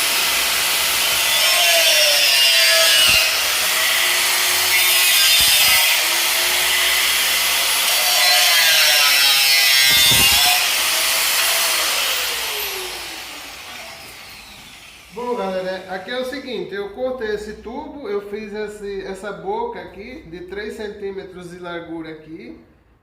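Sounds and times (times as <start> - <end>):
power tool cutting metal tube: 0.0 - 16.1.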